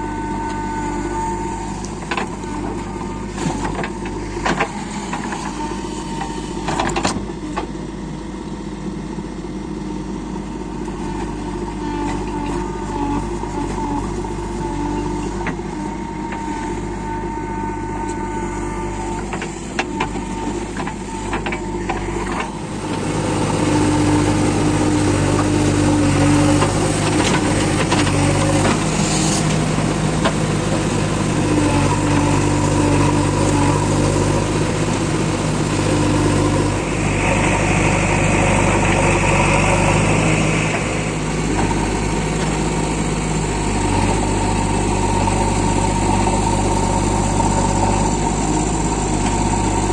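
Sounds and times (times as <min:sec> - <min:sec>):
backhoe loader diesel engine: 0:00.0 - 0:49.9
tractor diesel engine running: 0:00.0 - 0:49.9.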